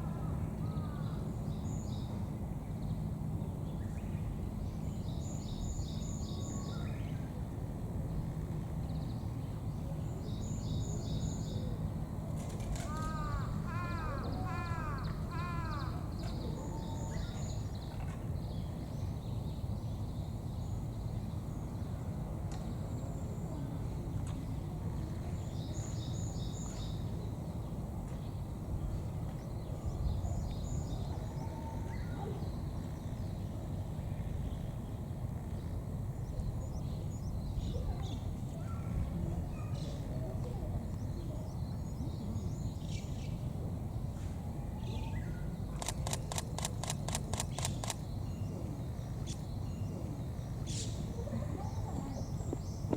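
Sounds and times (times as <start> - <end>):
low outdoor rumble: 0.0 - 52.9
crow cawing: 12.9 - 16.1
small birds chirping: 44.8 - 52.9.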